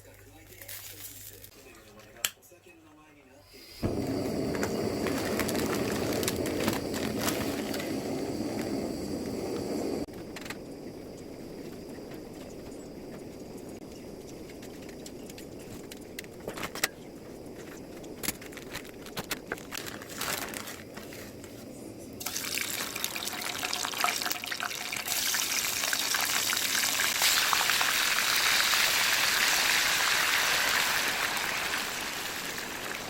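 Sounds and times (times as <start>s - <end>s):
crackles and clicks: 3.9s - 24.3s, 25.1s - 33.0s
meat sizzling in a pan: 22.2s - 33.0s.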